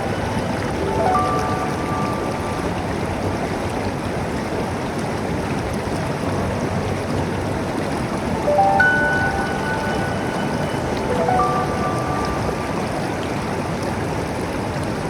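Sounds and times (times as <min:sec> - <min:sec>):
held musical note: 0:00.0 - 0:03.7, 0:08.3 - 0:14.3
river water rushing: 0:00.0 - 0:15.0.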